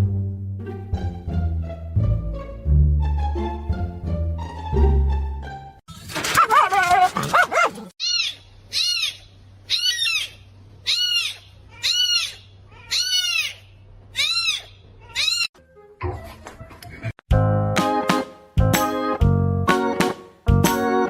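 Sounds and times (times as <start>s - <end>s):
pet crying: 8.0s - 15.5s.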